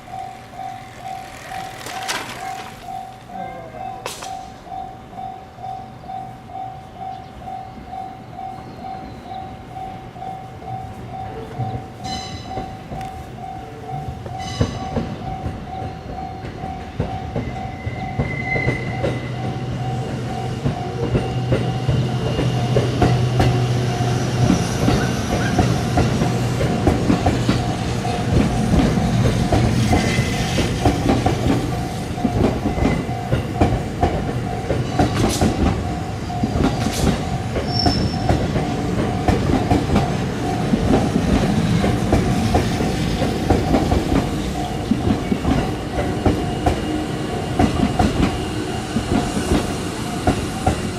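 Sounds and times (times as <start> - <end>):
train wheels clattering: 0.0 - 3.4, 11.5 - 50.9
level crossing bell ringing: 0.0 - 8.6.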